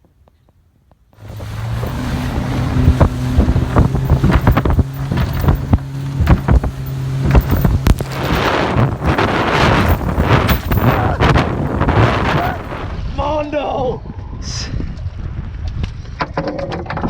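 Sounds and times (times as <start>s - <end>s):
hull slapping on water: 1.2s - 13.0s
motorboat engine drone: 1.2s - 13.0s
wind buffeting microphone: 1.2s - 16.2s.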